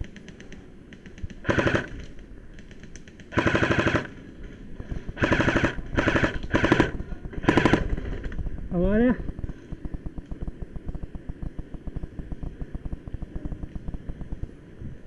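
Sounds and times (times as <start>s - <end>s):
airsoft guns firing bursts: 0.0s - 4.3s, 5.1s - 8.4s
distant gun bursts: 0.0s - 4.3s, 5.1s - 8.4s.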